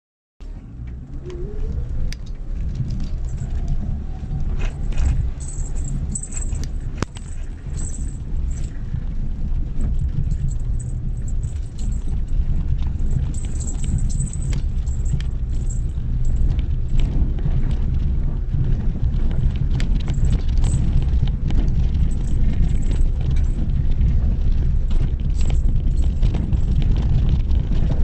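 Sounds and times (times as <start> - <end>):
car engine and road drone: 0.4 - 28.0
knocks and rattles from bumps: 2.5 - 28.0.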